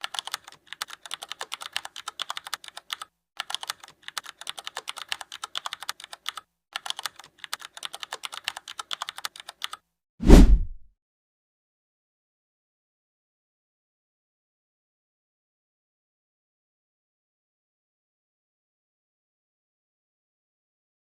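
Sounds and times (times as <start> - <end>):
keyboard keystroke clicks: 0.0 - 9.8.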